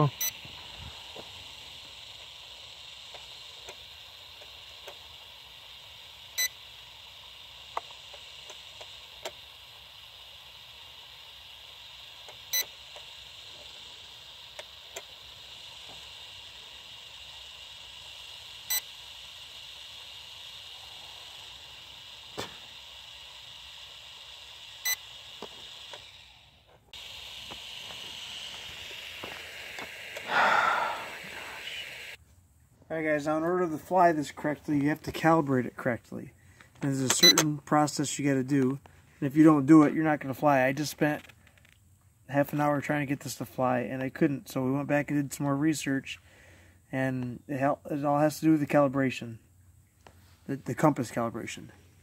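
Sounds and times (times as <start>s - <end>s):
steady high hiss: 0.0s - 52.0s
short electronic beep: 37.2s - 37.4s.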